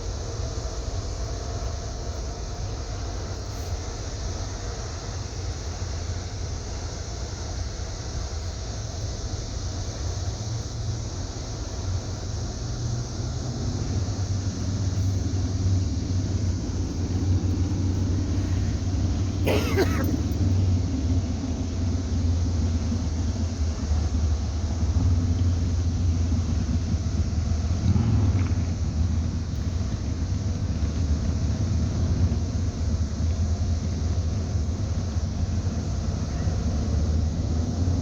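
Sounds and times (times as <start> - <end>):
boat engines rumbling: 0.0 - 38.0
person coughing: 19.4 - 20.3.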